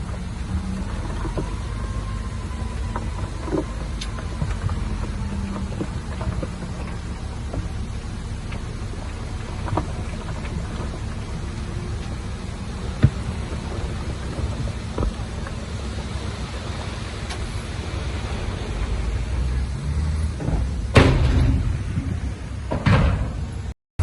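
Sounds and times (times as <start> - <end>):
diesel machinery rumbling: 0.0 - 23.8
loud clattering crashes: 20.3 - 23.7
sharp knocks: 20.4 - 22.0.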